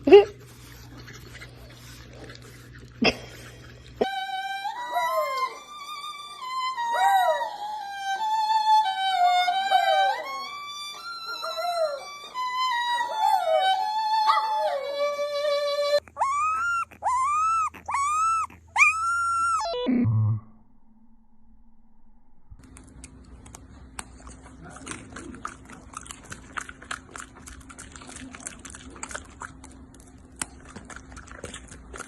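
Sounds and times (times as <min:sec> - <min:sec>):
violin-led tune: 0:04.0 - 0:16.0
dog yelping and howling: 0:04.0 - 0:19.9.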